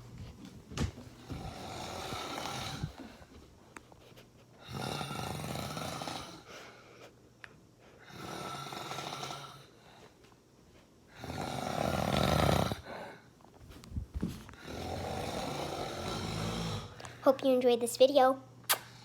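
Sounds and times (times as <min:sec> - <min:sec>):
man snoring: 0:01.2 - 0:03.1, 0:04.6 - 0:06.5, 0:08.0 - 0:09.8, 0:11.2 - 0:12.9, 0:14.6 - 0:17.0.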